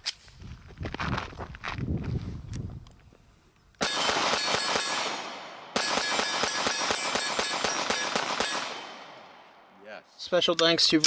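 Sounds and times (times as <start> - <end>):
rapid pistol fire: 3.8 - 9.1.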